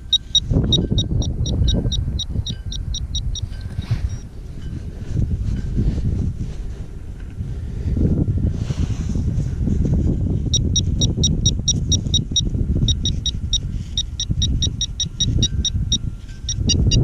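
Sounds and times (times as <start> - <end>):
pinpointer beeping rapidly: 0.0 - 4.2, 10.5 - 17.0.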